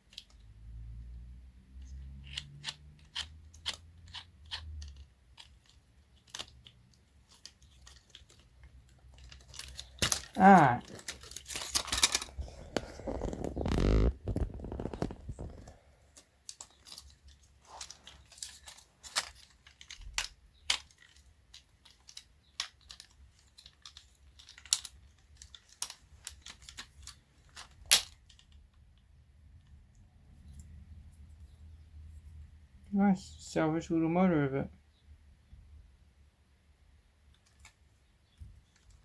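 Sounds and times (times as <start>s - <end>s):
small clicks and taps: 1.8s - 10.4s
scraping rustle: 1.9s - 28.5s
sharp plastic snap: 27.8s - 28.4s.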